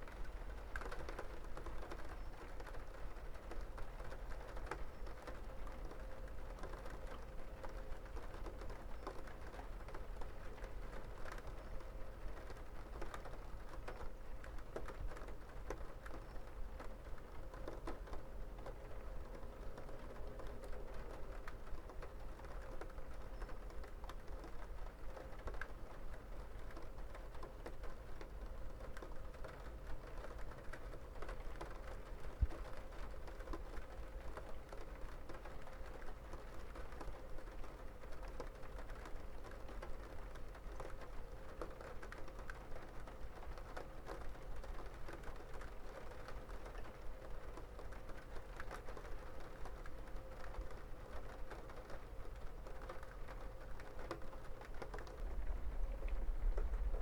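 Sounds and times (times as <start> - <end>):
rain drops tapping: 0.0 - 57.0
low rumble: 55.3 - 57.0.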